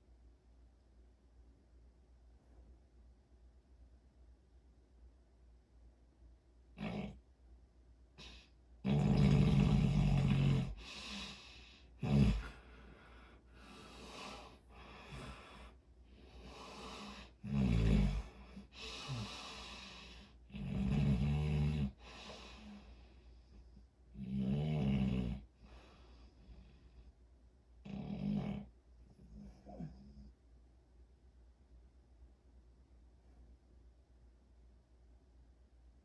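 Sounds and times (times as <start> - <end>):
quiet breaths: 5.4 - 36.0
person snoring: 8.9 - 11.4, 12.0 - 12.7, 16.7 - 22.7.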